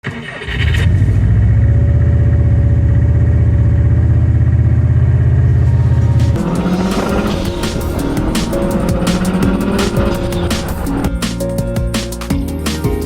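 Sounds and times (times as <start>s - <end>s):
large engine idling: 0.8s - 11.1s
music: 5.5s - 13.0s.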